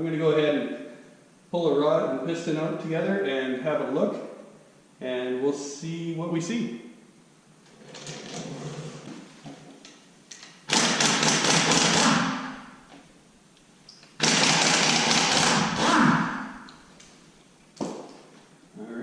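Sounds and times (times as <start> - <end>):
impact wrench rattling: 10.3 - 12.8, 14.2 - 16.8.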